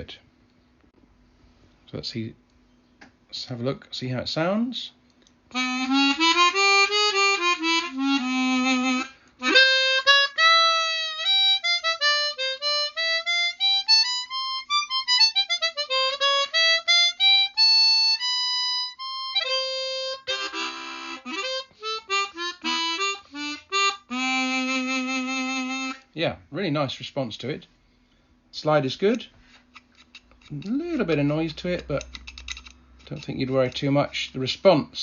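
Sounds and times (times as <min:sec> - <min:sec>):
harmonica playing: 0:05.5 - 0:26.1.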